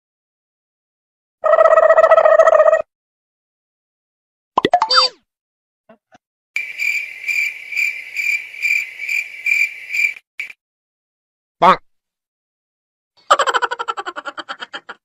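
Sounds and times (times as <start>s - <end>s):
crickets chirping: 6.6s - 10.6s.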